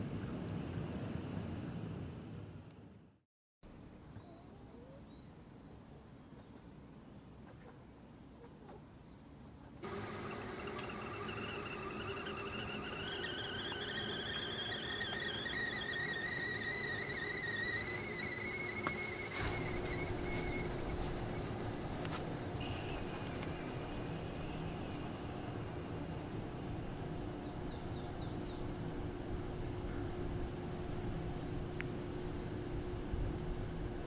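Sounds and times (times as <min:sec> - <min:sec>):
high whistling tones rising: 0:09.8 - 0:29.6
low steady hum: 0:09.8 - 0:34.0.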